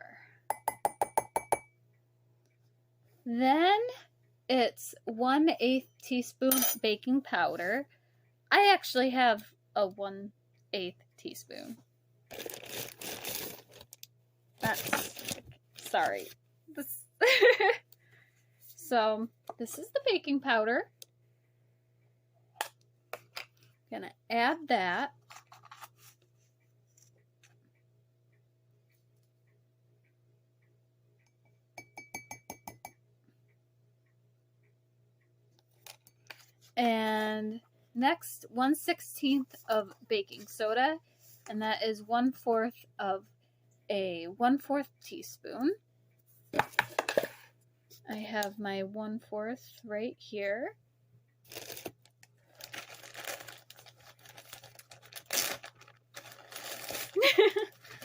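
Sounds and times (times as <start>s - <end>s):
spoon clinking against mug: 0.5s - 1.7s, 31.8s - 33.0s.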